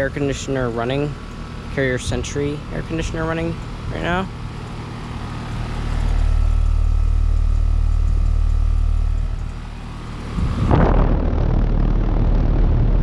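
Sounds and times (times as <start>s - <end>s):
air conditioner unit humming: 0.0s - 13.0s
loud rush of noise: 9.6s - 13.0s.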